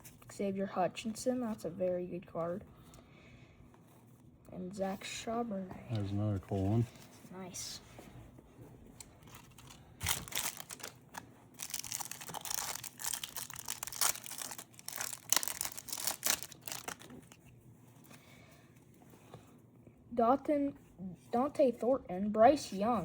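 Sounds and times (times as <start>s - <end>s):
foil wrapper crinkling and tearing: 9.0s - 17.4s.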